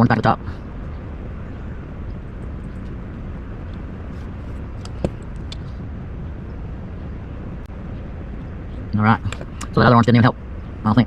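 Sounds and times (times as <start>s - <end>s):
steady background noise: 0.0s - 11.0s.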